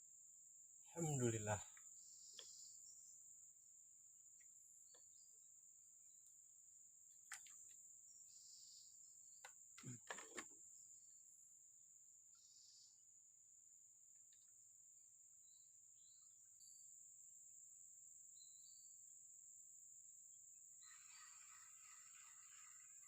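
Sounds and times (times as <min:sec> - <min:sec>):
insect drone: 0:00.0 - 0:23.0.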